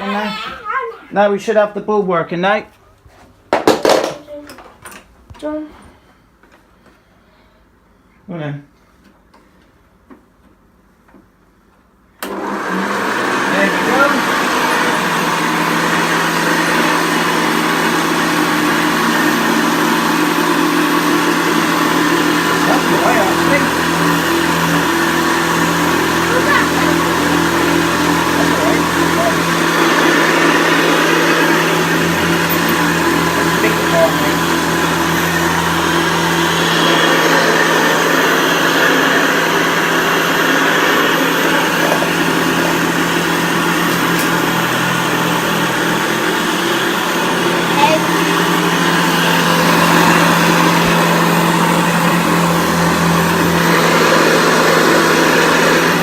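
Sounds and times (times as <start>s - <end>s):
upright vacuum cleaner running: 12.2s - 56.0s.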